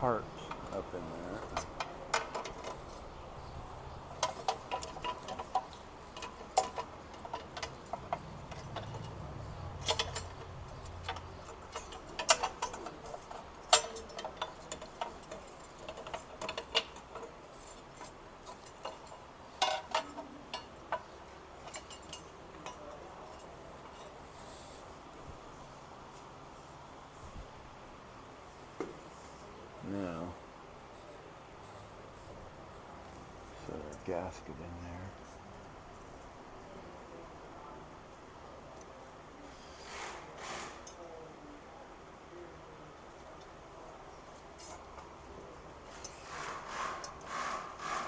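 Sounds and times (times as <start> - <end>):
metal clinks and taps: 4.0 - 24.2.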